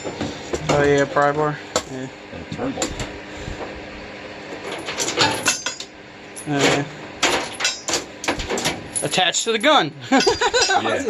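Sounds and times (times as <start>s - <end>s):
metal tools clinking: 4.6s - 11.0s.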